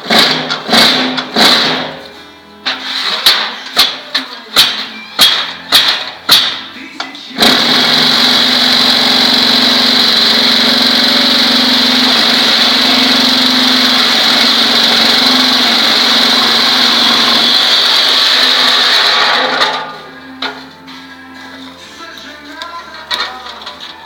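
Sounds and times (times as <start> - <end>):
machine vibrators buzzing: 7.4 - 20.5.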